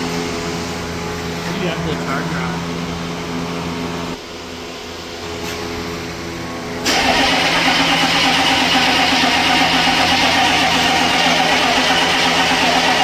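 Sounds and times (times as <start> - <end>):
diesel engine cranking and running: 6.8 - 13.0.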